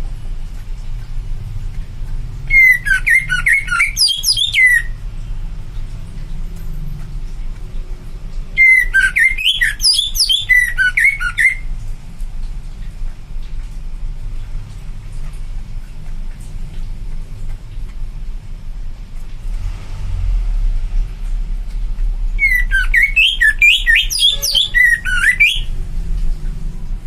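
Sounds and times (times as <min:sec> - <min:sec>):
bird singing whistled chattering notes: 0:02.4 - 0:05.0, 0:08.5 - 0:11.7, 0:22.4 - 0:25.8.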